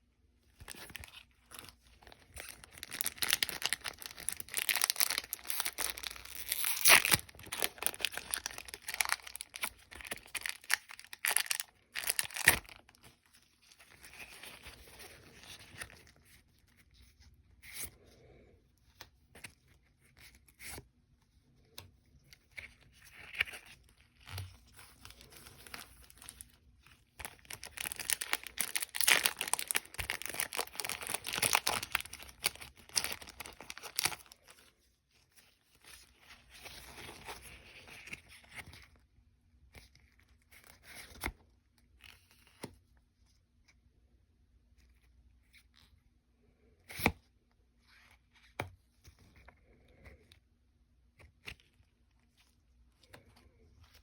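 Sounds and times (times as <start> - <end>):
wrappers tearing and crinkling: 0.6 - 13.0, 27.2 - 34.5.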